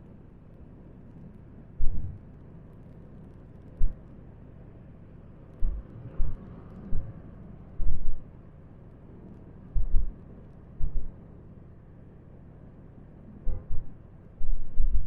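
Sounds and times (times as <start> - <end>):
loud low thumps: 5.6 - 6.4.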